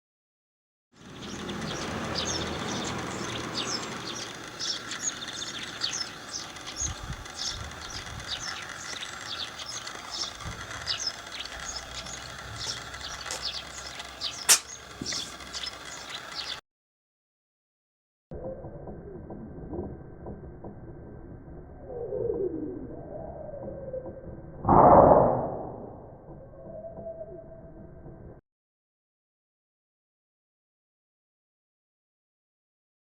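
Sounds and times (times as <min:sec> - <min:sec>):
birds chirping: 0:01.0 - 0:16.6.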